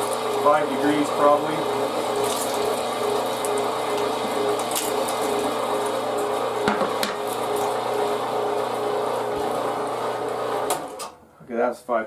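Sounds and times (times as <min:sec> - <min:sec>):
meat grinder motor humming: 0:00.0 - 0:11.1.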